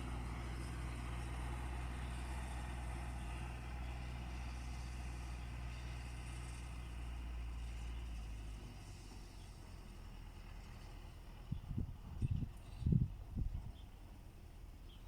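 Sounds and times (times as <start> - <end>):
tractor engine droning: 0.0 - 15.0.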